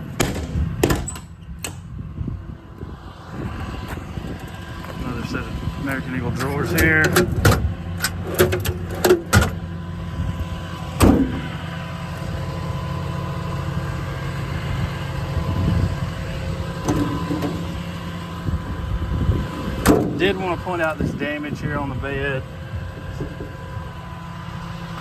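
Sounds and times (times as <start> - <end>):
diesel engine idling: 0.0 - 25.0
metal drawers knocking and clicking: 6.4 - 9.6.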